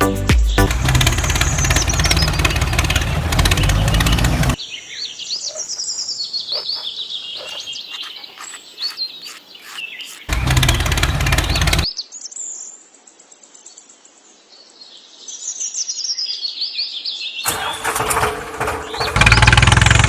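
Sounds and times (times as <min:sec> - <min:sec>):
small birds chirping: 0:00.0 - 0:12.7.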